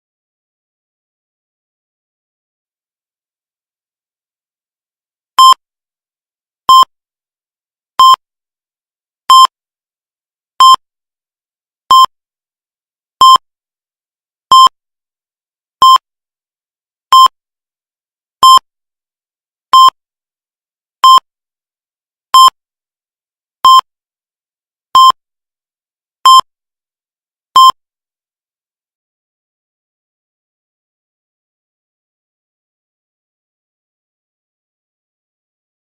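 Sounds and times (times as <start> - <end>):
heart rate monitor beeping: 5.4 - 5.6, 6.7 - 6.9, 8.0 - 8.2, 9.3 - 9.6, 10.6 - 10.8, 11.9 - 12.1, 13.2 - 13.5, 14.5 - 14.8, 15.8 - 16.0, 17.1 - 17.4, 18.4 - 18.7, 19.7 - 20.0, 21.0 - 21.3, 22.3 - 22.6, 23.6 - 23.9, 25.0 - 25.2, 26.2 - 26.5, 27.5 - 27.8.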